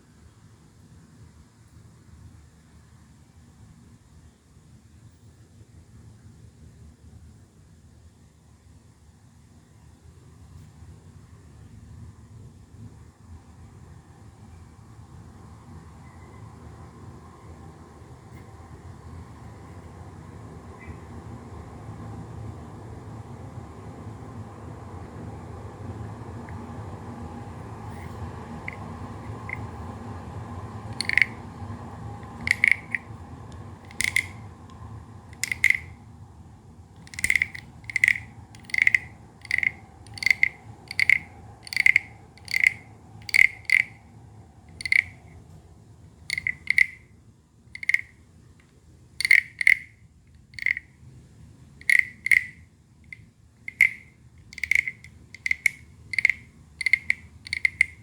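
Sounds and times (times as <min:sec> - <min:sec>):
wooden frog scraper clicks: 0:31.0 - 0:31.4, 0:32.3 - 0:33.1, 0:33.9 - 0:34.4, 0:35.4 - 0:35.9, 0:37.0 - 0:44.0, 0:44.8 - 0:45.2, 0:46.3 - 0:47.0, 0:47.8 - 0:48.1, 0:49.2 - 0:49.9, 0:50.6 - 0:50.8, 0:51.8 - 0:52.5, 0:53.7 - 0:58.0.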